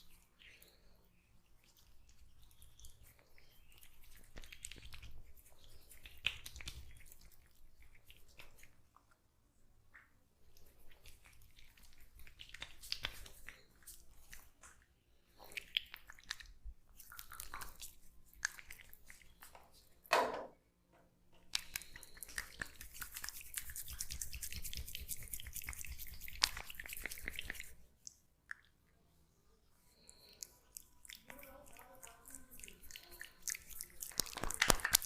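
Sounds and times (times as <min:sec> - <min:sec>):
oiled hands rubbing skin: 0:10.5 - 0:14.8, 0:21.5 - 0:27.9, 0:30.1 - 0:35.0.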